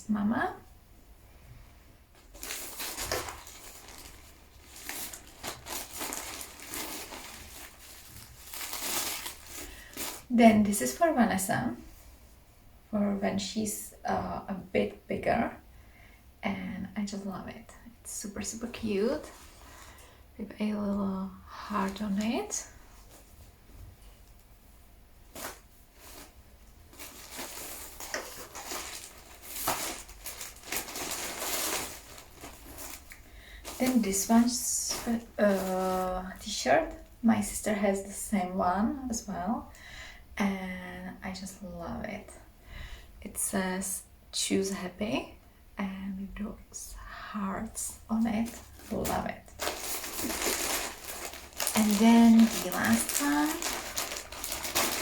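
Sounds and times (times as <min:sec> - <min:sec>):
packaging and clothes rustling: 0:02.2 - 0:10.4, 0:25.3 - 0:37.0, 0:48.2 - 0:55.0.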